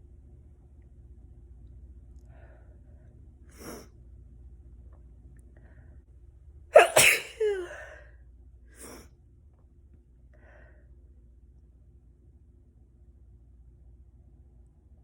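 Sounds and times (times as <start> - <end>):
person sneezing: 6.8 - 7.9.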